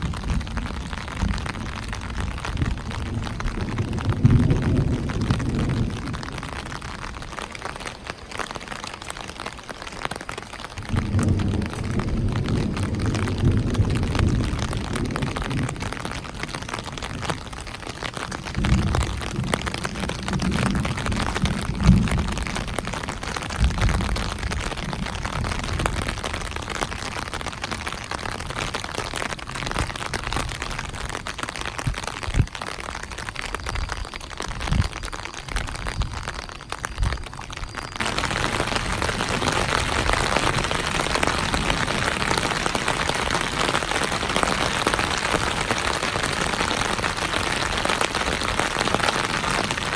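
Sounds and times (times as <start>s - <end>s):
distant thunder rumbling: 0.0s - 8.7s, 10.8s - 27.8s, 38.0s - 49.9s
rain falling: 0.0s - 49.9s.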